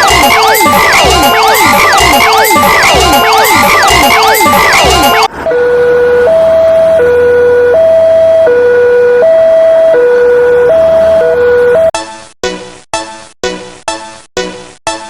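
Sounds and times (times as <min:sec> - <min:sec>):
two-tone siren: 0:00.0 - 0:12.0.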